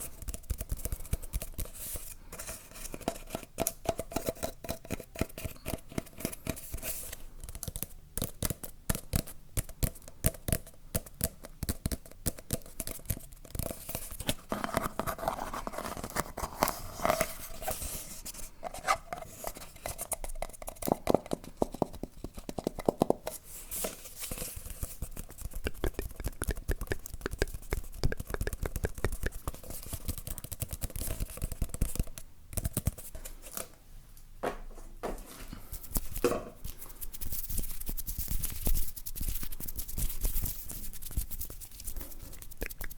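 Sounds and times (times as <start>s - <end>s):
objects scratched and rubbed: 13.7s - 20.2s, 23.3s - 31.5s, 35.8s - 42.9s.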